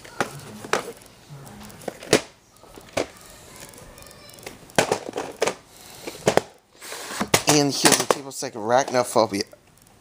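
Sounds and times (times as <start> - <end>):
handling clicks and knocks: 7.2 - 9.2.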